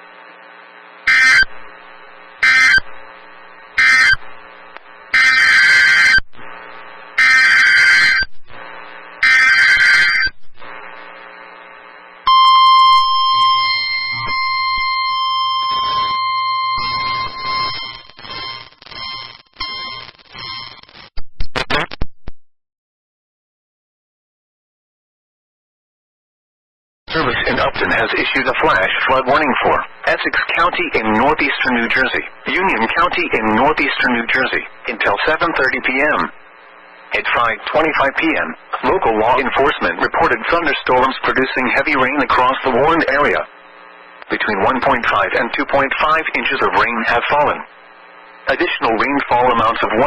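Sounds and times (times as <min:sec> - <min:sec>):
digital data bursts: 0:01.1 - 0:01.5, 0:02.4 - 0:03.0, 0:03.7 - 0:04.2, 0:05.1 - 0:06.2, 0:07.2 - 0:08.3, 0:09.2 - 0:10.4, 0:12.3 - 0:21.1
steady warning alarm tone: 0:01.1 - 0:01.6, 0:02.4 - 0:03.0, 0:03.7 - 0:04.2, 0:05.1 - 0:06.2, 0:07.2 - 0:08.3, 0:09.2 - 0:10.3, 0:12.3 - 0:21.0.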